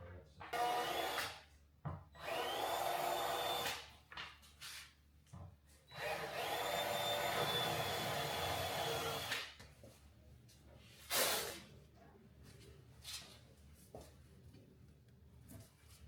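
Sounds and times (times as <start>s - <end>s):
power drill running: 0.6s - 1.4s, 2.2s - 3.8s, 5.9s - 9.5s
short loud hiss: 11.1s - 11.6s.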